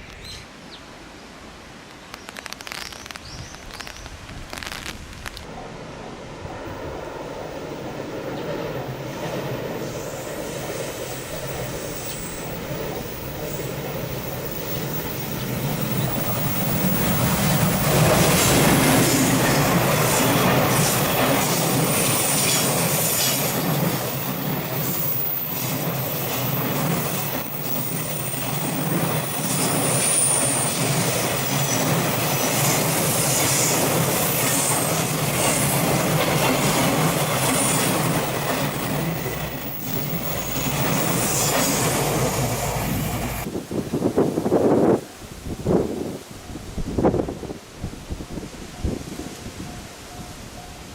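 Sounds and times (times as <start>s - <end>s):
train wheels on rails: 6.6s - 45.0s.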